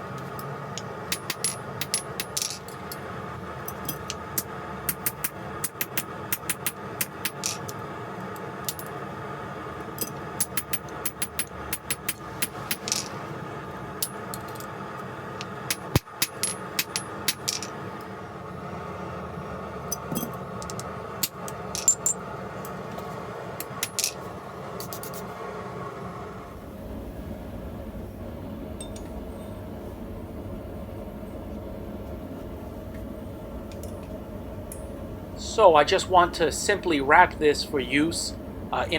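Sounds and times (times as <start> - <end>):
steady hum: 0.0 - 38.9
small steel pieces clinking: 0.4 - 3.0, 12.7 - 13.2, 15.7 - 17.8, 21.7 - 22.8, 23.8 - 24.2.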